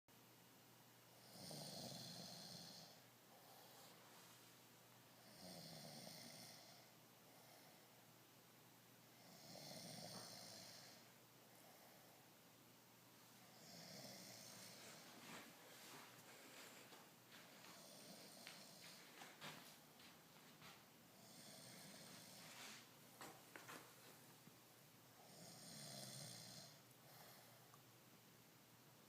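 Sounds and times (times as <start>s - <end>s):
person snoring: 1.2s - 4.0s, 5.2s - 7.9s, 9.1s - 12.2s, 13.4s - 17.0s, 17.6s - 19.5s, 21.2s - 22.9s, 25.2s - 27.7s.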